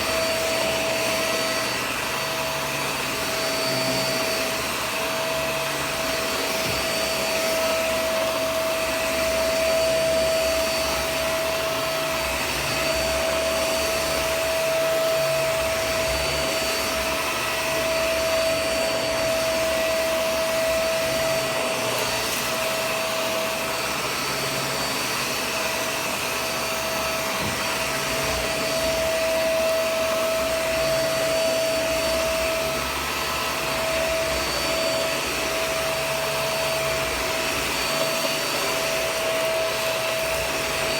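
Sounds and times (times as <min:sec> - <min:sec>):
vacuum motor whine: 0:00.0 - 0:40.9.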